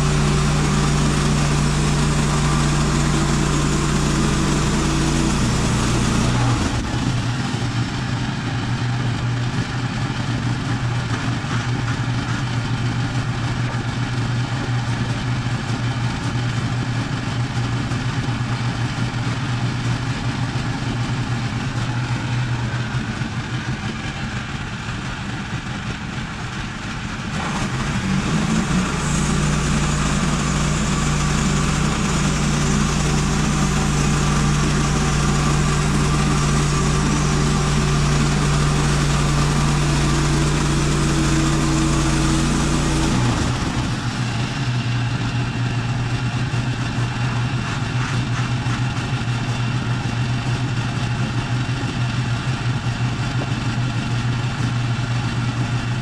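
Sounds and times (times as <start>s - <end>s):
saw cutting under load: 0.0s - 8.0s, 27.4s - 44.9s
sawmill engine running: 0.0s - 56.0s.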